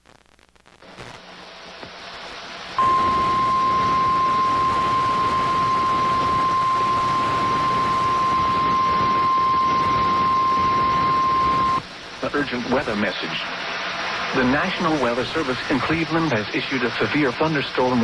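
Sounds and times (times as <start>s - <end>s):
radio static: 2.1s - 18.0s
steady high alarm tone: 2.8s - 11.8s.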